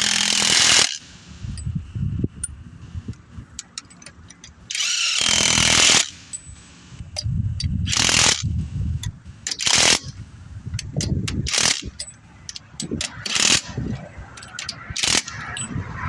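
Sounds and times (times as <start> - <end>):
power tool running: 4.7 - 6.2.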